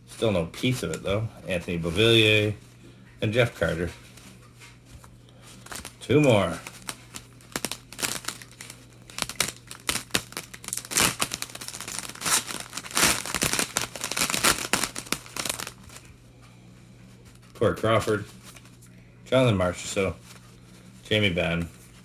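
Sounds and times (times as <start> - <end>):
wrapper tearing and crinkling: 5.6 - 16.1.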